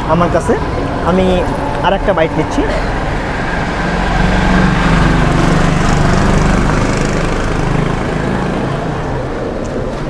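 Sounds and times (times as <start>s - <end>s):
small engine droning: 3.2s - 9.6s.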